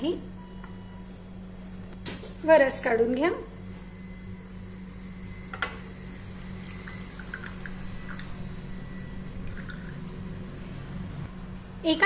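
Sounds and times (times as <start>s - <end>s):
steady low hum: 0.0s - 12.0s
juice dripping: 6.2s - 10.4s.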